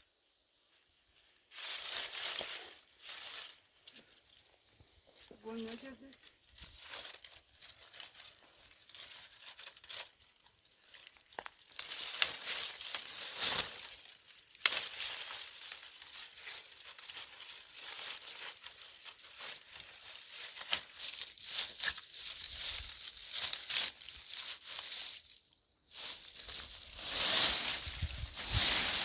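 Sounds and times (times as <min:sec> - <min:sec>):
dense crackling and rustling: 0:00.2 - 0:29.0
wind gusting on microphone: 0:27.8 - 0:29.0.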